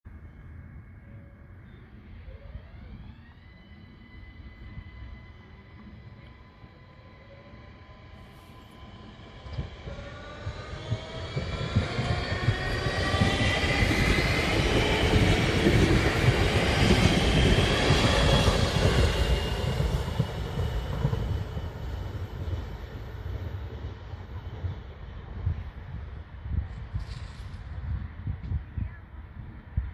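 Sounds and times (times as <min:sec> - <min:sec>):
train traction motors whining: 0:01.0 - 0:23.3
wheels rumbling on rail: 0:02.1 - 0:29.7.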